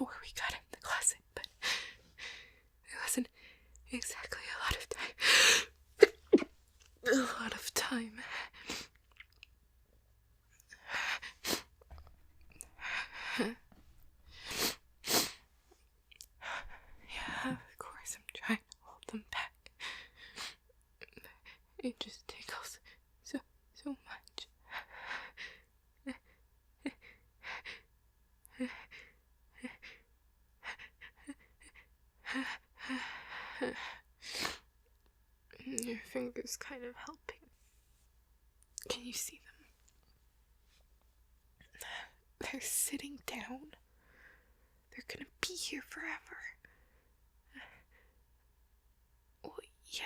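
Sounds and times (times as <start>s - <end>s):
woman gasping: 5.0s - 7.4s.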